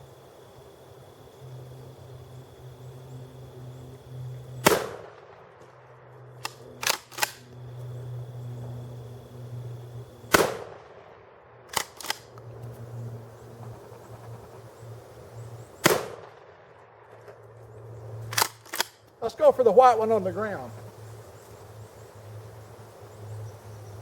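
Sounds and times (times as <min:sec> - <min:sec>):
steady low hum: 0:00.0 - 0:11.0, 0:12.2 - 0:24.0
shotgun blasts: 0:04.6 - 0:05.3, 0:10.2 - 0:11.0, 0:15.0 - 0:16.5.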